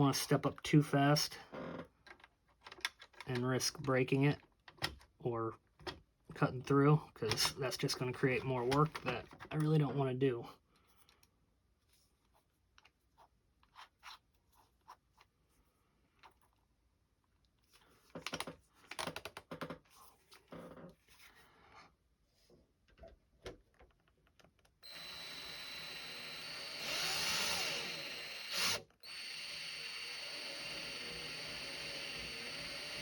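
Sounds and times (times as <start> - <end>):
small electric drill whining: 24.8 - 33.0.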